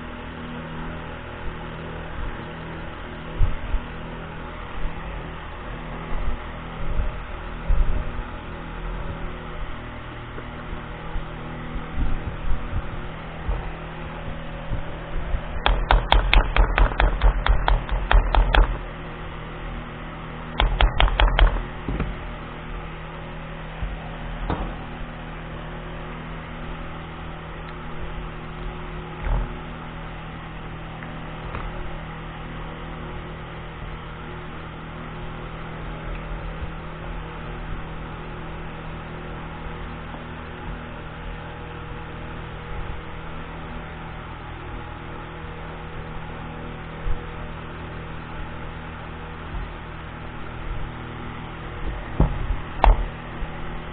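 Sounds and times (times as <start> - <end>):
steady hum: 0.0 - 53.9
pistol parts clicking and knocking: 15.7 - 18.8, 20.6 - 21.7.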